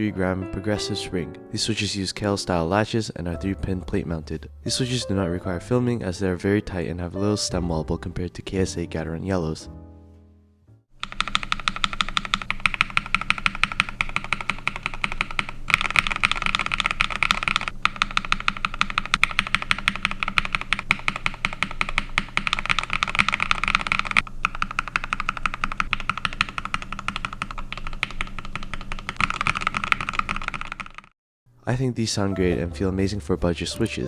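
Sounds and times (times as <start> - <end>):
mechanical keyboard typing clacks: 11.0 - 31.1.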